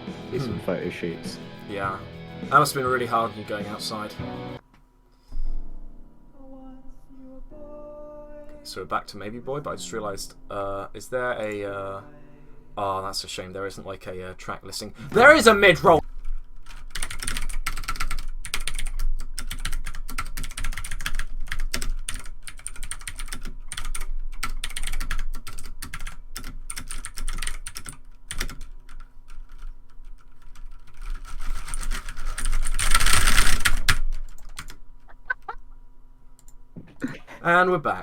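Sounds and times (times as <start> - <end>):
typing on computer keyboard: 16.6 - 34.8.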